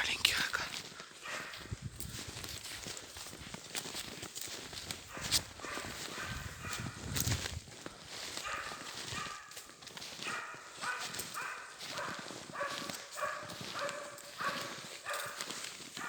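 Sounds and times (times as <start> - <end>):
dog barking: 1.0 - 1.7, 5.1 - 7.0, 8.3 - 16.0.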